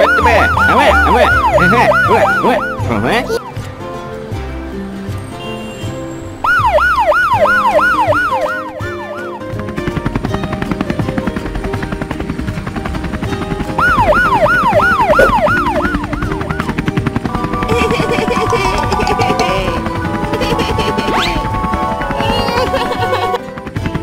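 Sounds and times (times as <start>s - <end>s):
cartoon siren wail: 0.0s - 3.4s, 6.4s - 9.4s, 13.8s - 16.7s
background music: 0.0s - 24.0s.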